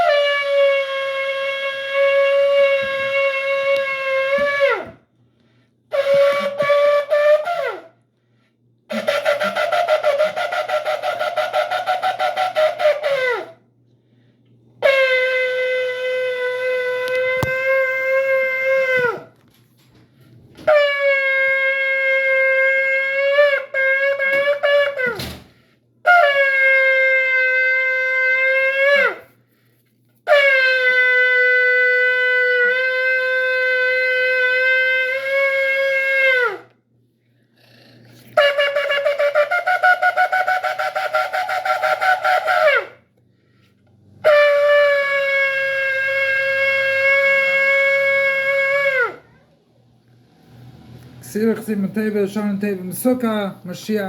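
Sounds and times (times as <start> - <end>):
shofar blasts: 0.0 - 5.0, 5.9 - 8.0, 8.9 - 13.6, 14.8 - 19.5, 20.5 - 25.4, 26.0 - 29.6, 30.2 - 36.8, 38.2 - 49.4.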